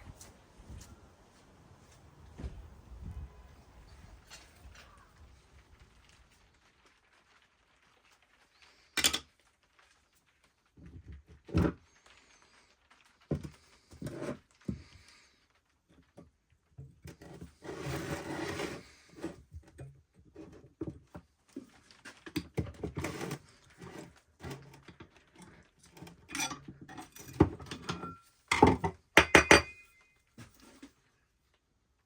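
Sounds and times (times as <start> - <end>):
hard objects knocking and clinking: 26.3 - 30.1.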